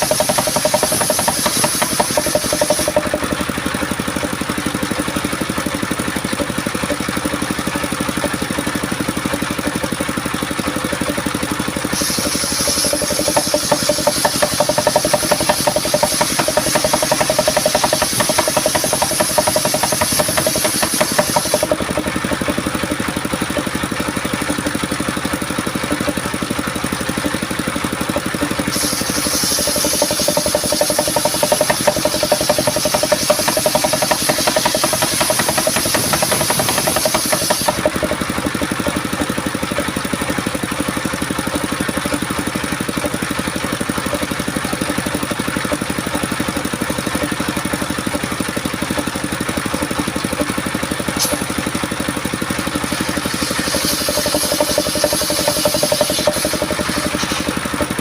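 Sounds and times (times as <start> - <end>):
sawmill drive drone: 0.0 - 3.3, 11.9 - 22.7, 28.5 - 38.0, 52.7 - 58.0
saw blade cutting timber: 0.0 - 4.8, 11.7 - 23.7, 28.2 - 39.4, 49.7 - 58.0.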